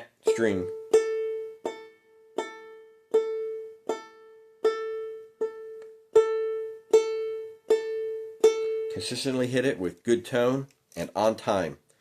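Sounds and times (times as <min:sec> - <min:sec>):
banjolele string plucked: 0:00.0 - 0:09.5.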